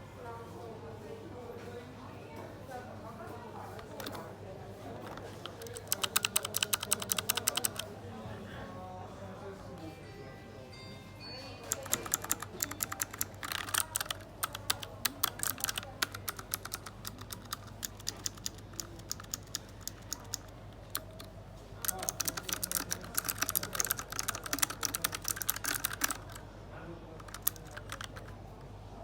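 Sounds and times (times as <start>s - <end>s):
mechanical keyboard typing: 3.8s - 4.3s, 5.0s - 7.9s, 11.6s - 26.4s, 27.2s - 28.4s.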